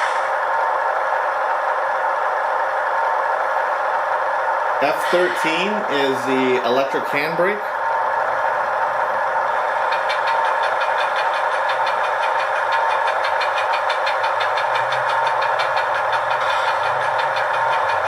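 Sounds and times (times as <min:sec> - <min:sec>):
model locomotive engine idling: 0:00.0 - 0:18.0
fast ratcheting tick: 0:09.8 - 0:18.0.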